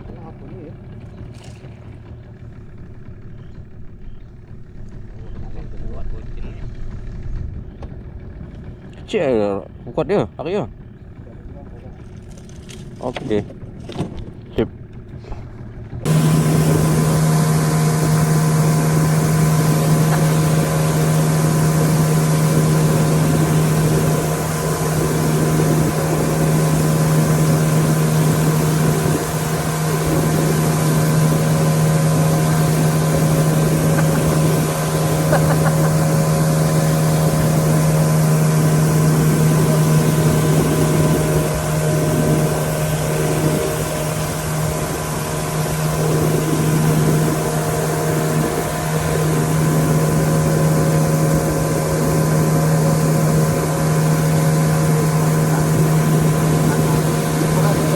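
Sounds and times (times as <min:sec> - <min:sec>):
boat engine humming: 0:00.0 - 0:57.9
water noise: 0:15.1 - 0:57.9
rushing wind: 0:15.9 - 0:57.9.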